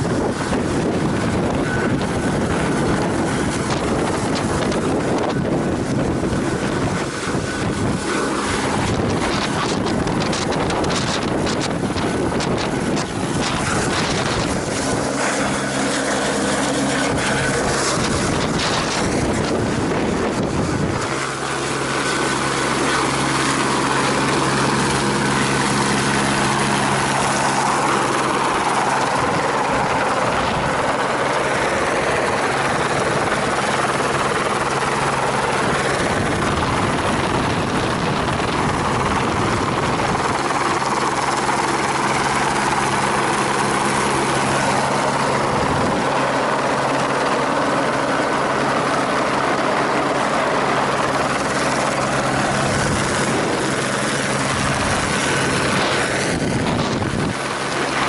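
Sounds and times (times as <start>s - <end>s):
helicopter rotor and engine: 0.0s - 58.0s.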